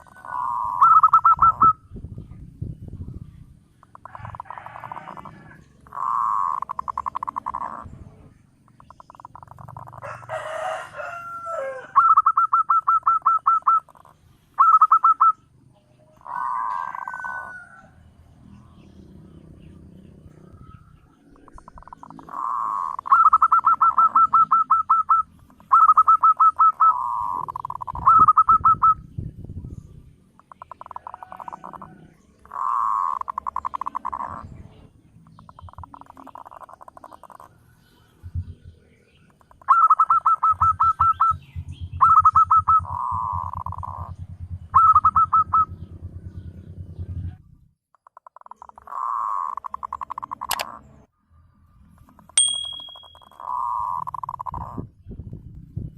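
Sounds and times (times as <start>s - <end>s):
doves cooing: 0.0s - 1.9s, 3.8s - 15.5s, 16.1s - 18.0s, 18.8s - 29.0s, 30.4s - 47.4s, 48.3s - 51.0s, 53.4s - 54.9s.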